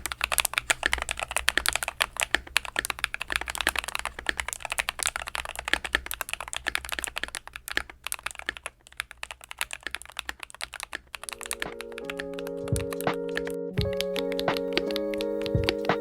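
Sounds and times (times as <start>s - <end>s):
mechanical keyboard typing: 0.0s - 16.0s
music: 11.2s - 16.0s.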